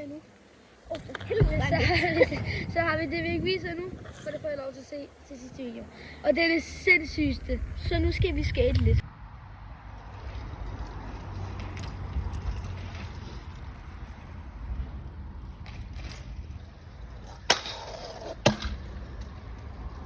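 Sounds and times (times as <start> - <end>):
skateboard wheels rolling on pavement: 0.0 - 5.8, 9.0 - 20.0
skateboard clacking: 17.1 - 19.4.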